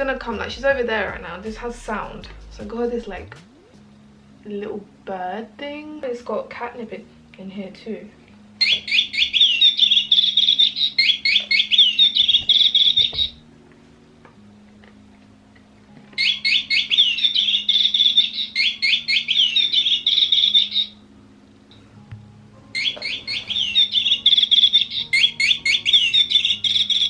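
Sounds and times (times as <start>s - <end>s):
electronic bird chirps: 8.6s - 13.4s, 16.2s - 21.0s, 22.7s - 27.0s.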